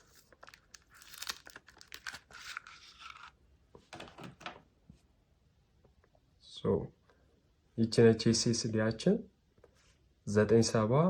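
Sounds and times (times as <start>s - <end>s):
packaging tearing and rustling: 0.0s - 3.4s.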